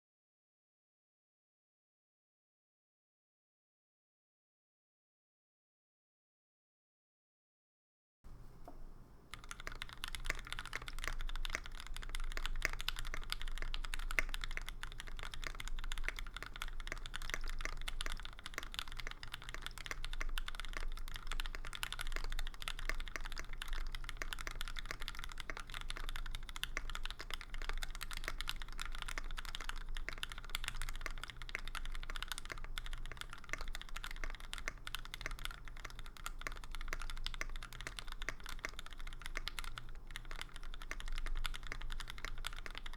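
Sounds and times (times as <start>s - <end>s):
low steady hum: 8.3s - 42.9s
mechanical keyboard typing: 8.6s - 42.9s.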